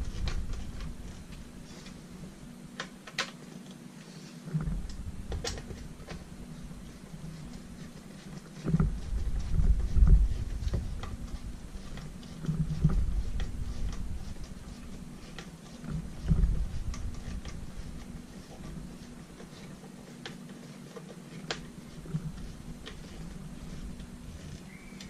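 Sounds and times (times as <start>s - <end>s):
low handling bumps: 8.6s - 19.3s.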